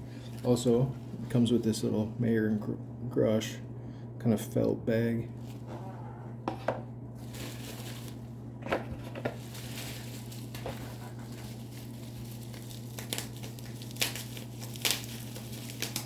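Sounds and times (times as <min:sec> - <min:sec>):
steady low hum: 0:00.0 - 0:16.0
packaging rustling: 0:07.2 - 0:16.0.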